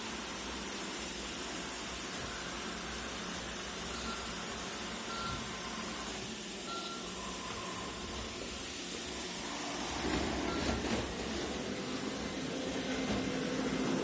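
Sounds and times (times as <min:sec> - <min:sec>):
faint high beeps: 0:03.8 - 0:05.9, 0:06.6 - 0:08.2
robot vacuum whirring: 0:07.4 - 0:14.0.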